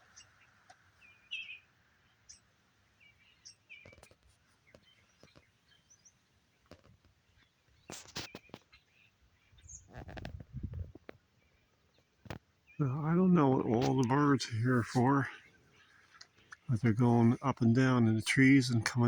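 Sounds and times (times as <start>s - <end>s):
birds chirping and calling: 0.0s - 4.1s, 12.6s - 19.0s.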